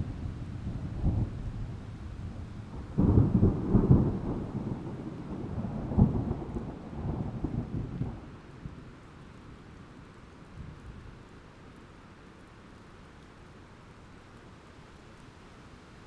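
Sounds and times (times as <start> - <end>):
thunder rumbling and cracking: 0.0 - 8.8
rain: 0.0 - 16.0.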